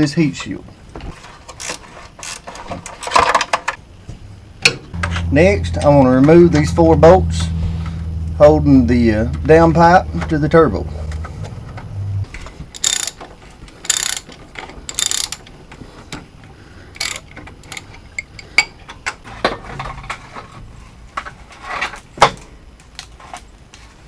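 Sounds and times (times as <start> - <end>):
ratchet wrench clicking: 12.8 - 13.2, 13.8 - 14.3, 14.9 - 15.5, 17.0 - 18.5.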